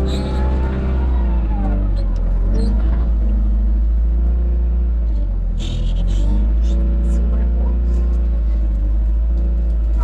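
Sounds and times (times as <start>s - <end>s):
tractor diesel engine rumbling: 0.0s - 10.0s.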